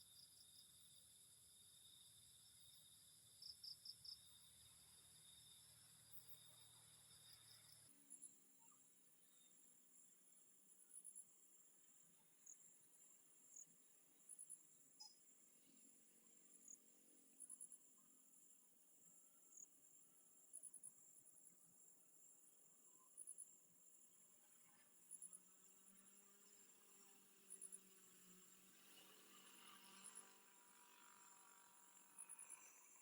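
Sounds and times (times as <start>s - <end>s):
cricket chirping: 0.0s - 33.0s
high-pitched insect drone: 25.1s - 33.0s.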